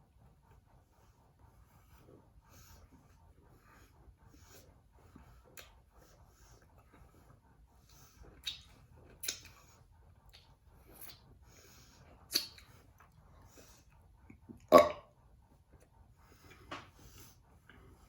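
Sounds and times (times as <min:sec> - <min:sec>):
person burping: 0:14.7 - 0:15.1.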